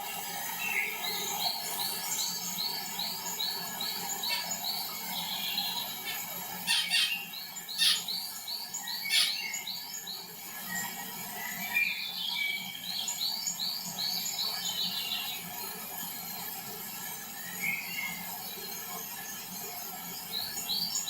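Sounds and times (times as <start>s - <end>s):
sharp downward-sweeping bird calls: 6.6s - 8.2s, 8.9s - 9.8s.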